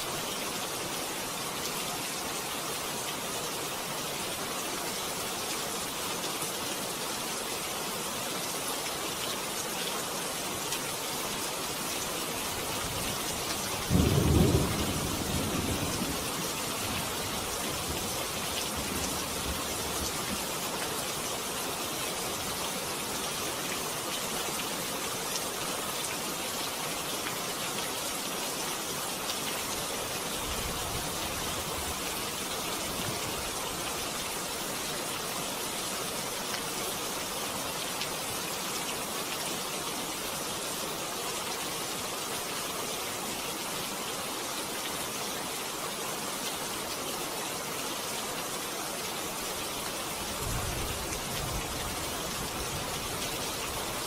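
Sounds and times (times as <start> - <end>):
rain hissing: 4.4 - 40.0.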